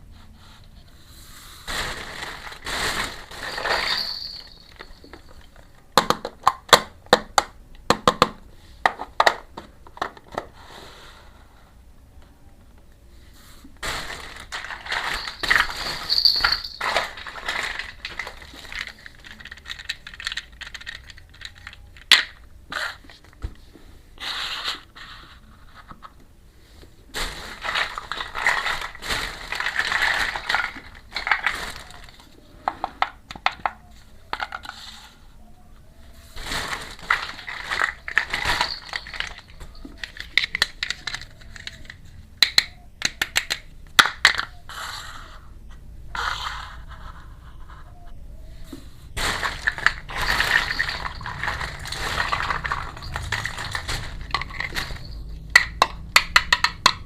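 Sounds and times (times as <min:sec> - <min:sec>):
plastic packaging crinkling: 0:01.7 - 0:05.9, 0:13.8 - 0:23.4, 0:27.1 - 0:32.8, 0:36.3 - 0:42.5, 0:49.1 - 0:55.6
toy pieces clicking and rattling: 0:14.1 - 0:23.3, 0:27.6 - 0:34.7, 0:37.0 - 0:44.6, 0:49.2 - 0:57.0.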